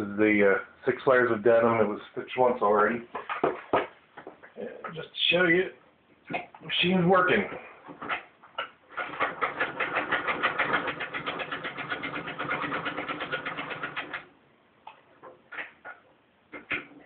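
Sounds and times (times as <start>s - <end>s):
sewing machine stitching: 8.9s - 14.3s.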